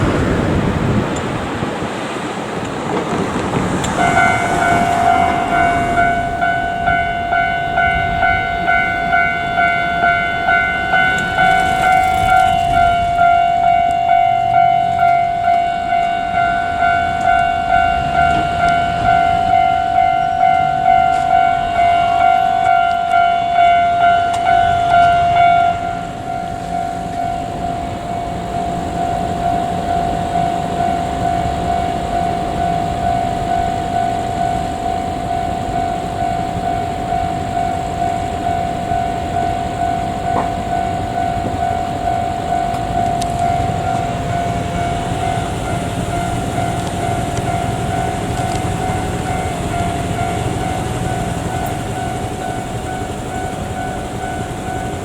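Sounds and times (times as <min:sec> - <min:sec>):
level crossing alarm ringing: 0:00.0 - 0:55.0
low rumble: 0:02.6 - 0:14.7.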